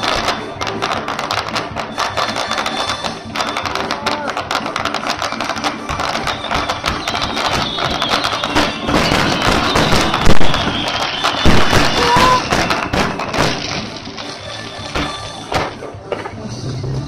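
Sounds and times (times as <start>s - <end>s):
fireworks bursting and crackling: 0.0s - 17.0s
loud bang: 5.9s - 16.0s.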